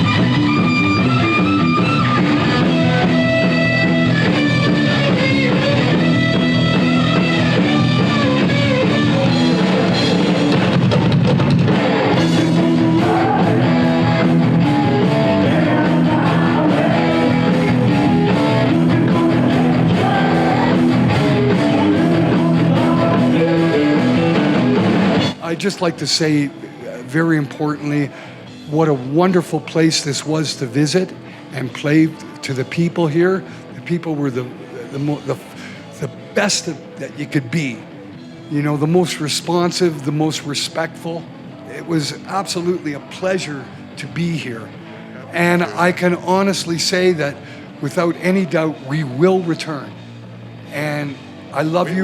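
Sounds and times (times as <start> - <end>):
drum kit: 0.0 - 25.8
distorted electric guitar: 0.0 - 29.1, 41.2 - 52.0.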